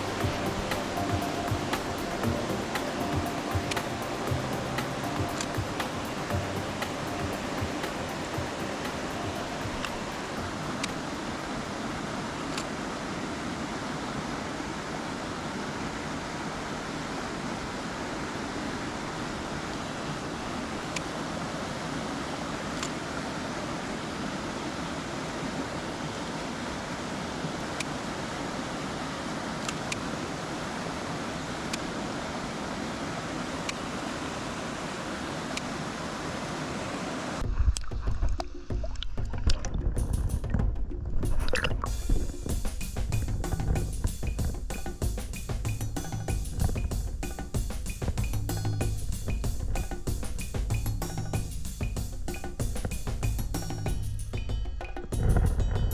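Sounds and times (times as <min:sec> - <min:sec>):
background music with drums: 0:00.0 - 0:11.6, 0:37.4 - 0:55.9
stream water rushing: 0:00.0 - 0:37.4.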